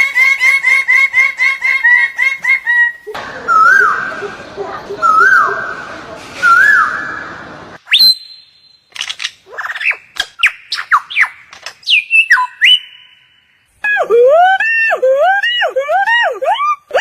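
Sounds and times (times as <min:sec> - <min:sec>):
bird whistling: 0:05.0 - 0:05.8, 0:06.4 - 0:08.8, 0:09.8 - 0:13.4.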